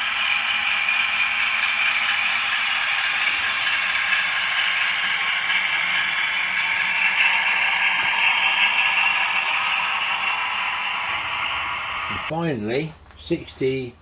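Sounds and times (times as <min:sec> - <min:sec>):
model diesel locomotive engine sound: 0:00.0 - 0:13.6.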